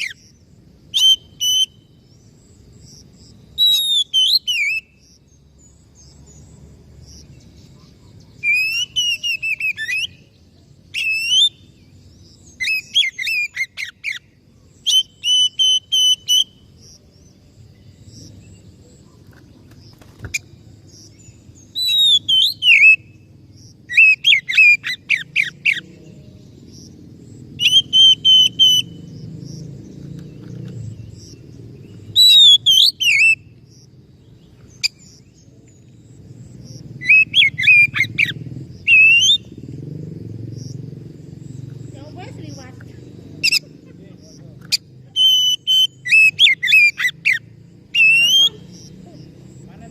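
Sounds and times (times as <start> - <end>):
magpie-robin singing whistled phrases: 0.0 - 2.0, 3.6 - 5.0, 8.4 - 11.8, 12.4 - 16.7, 21.3 - 25.9, 27.6 - 29.2, 31.9 - 33.5, 37.0 - 39.6, 44.7 - 49.0.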